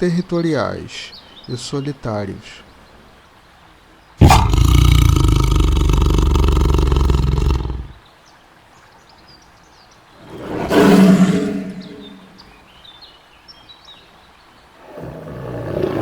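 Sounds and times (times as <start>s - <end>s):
tiger roaring: 4.2s - 8.0s, 10.2s - 12.4s, 14.8s - 16.0s.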